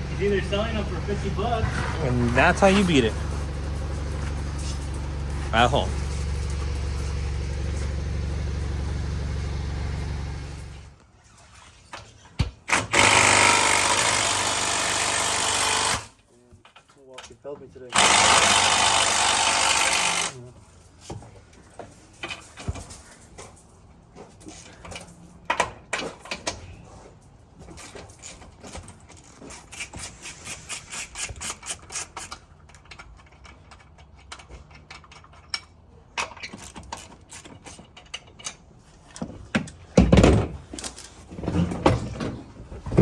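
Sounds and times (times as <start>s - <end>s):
small hard parts clicking and rattling: 15.5s - 40.1s.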